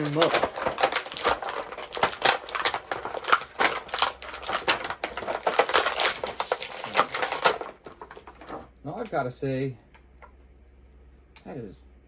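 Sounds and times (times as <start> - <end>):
packaging crinkling: 0.0 - 8.7.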